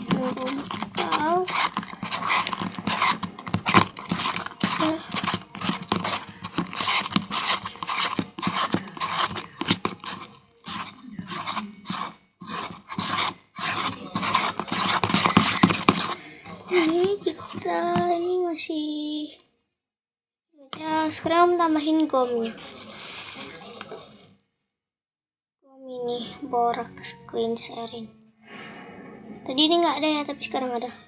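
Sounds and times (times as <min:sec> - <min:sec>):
slime squelching and scraping: 0:00.0 - 0:18.4, 0:20.7 - 0:24.4.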